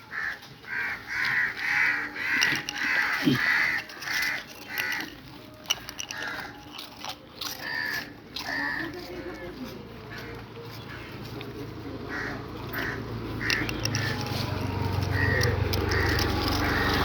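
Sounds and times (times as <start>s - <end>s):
crows cawing: 0.0s - 5.2s, 6.1s - 6.6s, 7.6s - 8.9s, 10.1s - 11.2s, 12.1s - 14.2s, 15.1s - 17.0s.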